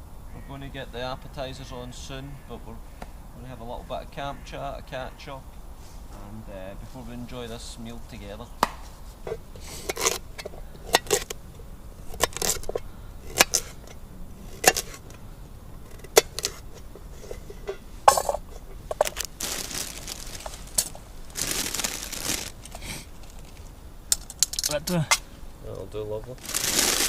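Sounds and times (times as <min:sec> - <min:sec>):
rustling hiss: 0:00.0 - 0:27.0
sharp knocks and cracks: 0:08.6 - 0:08.9.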